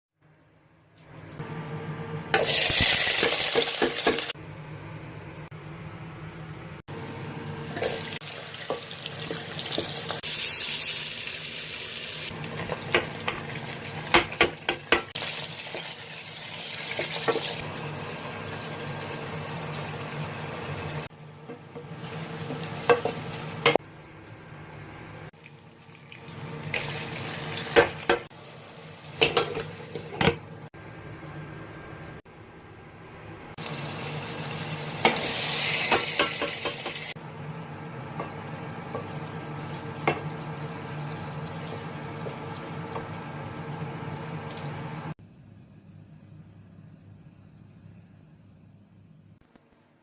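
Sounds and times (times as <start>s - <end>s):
food sizzling: 2.3s - 4.4s, 6.9s - 23.8s, 25.3s - 30.4s, 33.6s - 45.2s.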